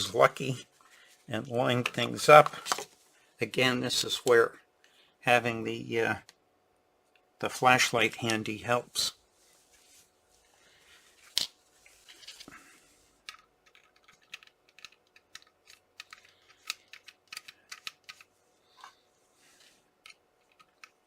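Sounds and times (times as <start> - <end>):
small parts clicking and tapping: 13.2 - 18.9, 20.0 - 21.0.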